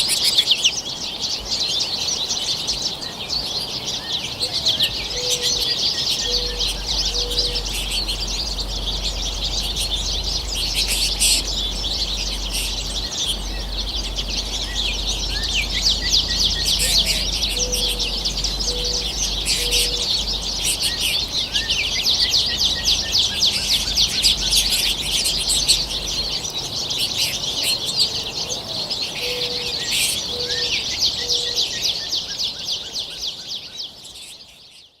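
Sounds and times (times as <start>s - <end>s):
finches twittering: 0.0s - 34.6s
low bird call: 4.1s - 26.4s.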